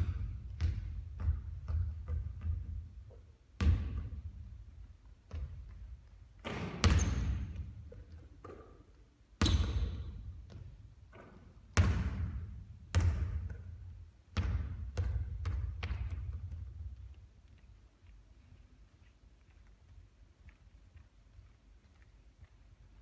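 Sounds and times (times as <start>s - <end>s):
basketball bouncing with echo: 0.0s - 17.1s.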